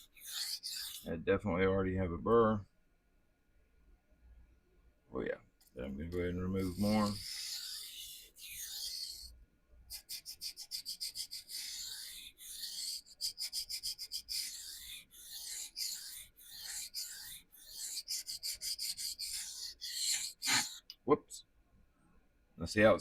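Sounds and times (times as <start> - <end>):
knife scraping on sharpening stone: 0.0 - 1.1, 6.2 - 9.3, 11.0 - 20.7.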